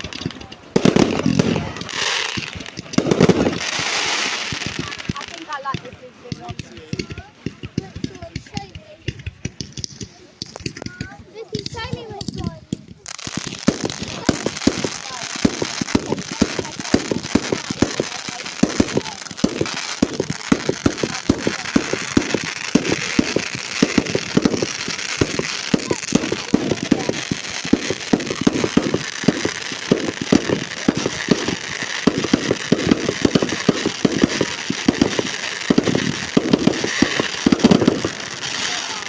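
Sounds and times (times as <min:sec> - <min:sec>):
firework bangs: 0:00.0 - 0:39.0
firework crackling: 0:00.0 - 0:39.0.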